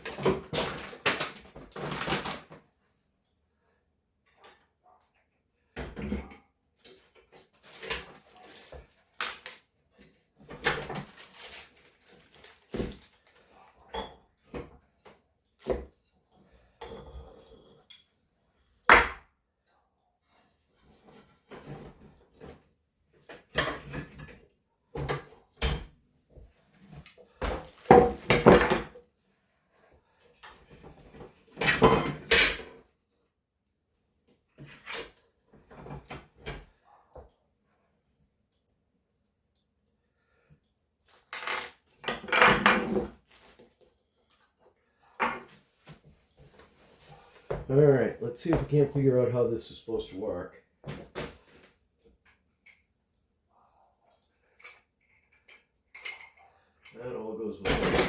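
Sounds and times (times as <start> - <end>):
metal parts and tools clattering: 54.6 - 57.0.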